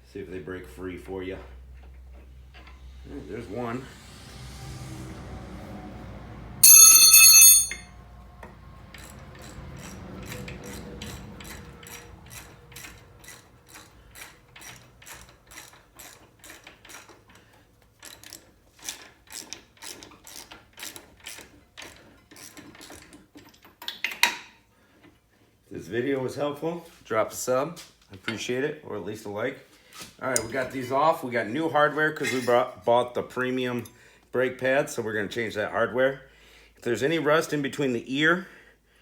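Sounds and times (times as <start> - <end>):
metallic ring: 6.6 - 8.0.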